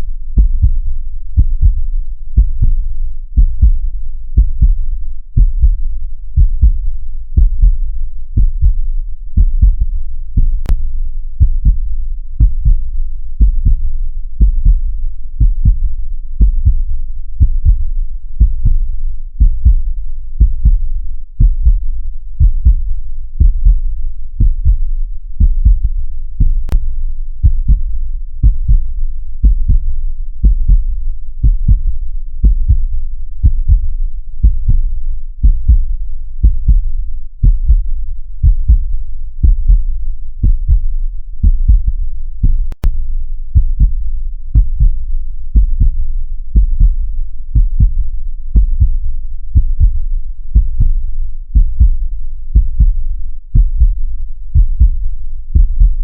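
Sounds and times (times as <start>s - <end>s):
heartbeat thumps: 0.4s - 0.8s, 1.4s - 1.8s, 2.4s - 2.8s, 3.4s - 3.8s, 4.4s - 4.8s, 5.4s - 5.8s, 6.4s - 6.8s, 7.4s - 7.8s, 8.4s - 10.8s, 11.4s - 11.8s, 12.4s - 14.8s, 15.4s - 18.8s, 19.4s - 20.8s, 21.4s - 26.8s, 27.4s - 43.0s, 43.6s - 49.0s, 49.6s - 56.0s.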